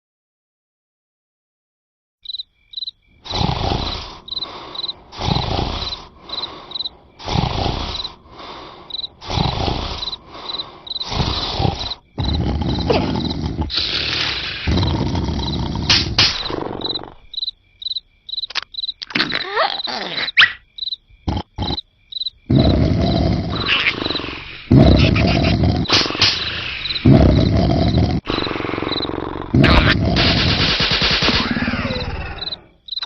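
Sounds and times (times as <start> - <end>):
crickets chirping: 2.2 - 33.0
person snoring: 3.2 - 17.3, 22.5 - 30.7.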